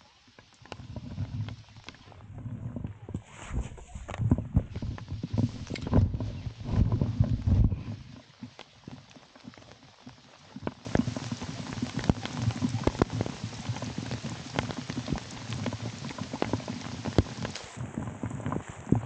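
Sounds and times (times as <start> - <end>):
raindrops tapping: 4.1 - 19.0.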